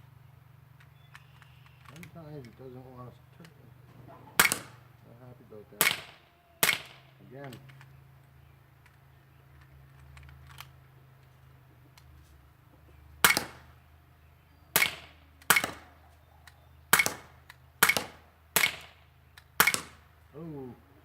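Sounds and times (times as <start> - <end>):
faint handling clicks: 0.8 - 3.6, 7.4 - 12.4
air pistol shots: 4.2 - 5.0, 5.8 - 7.2, 13.2 - 13.8, 14.7 - 16.0, 16.9 - 20.1.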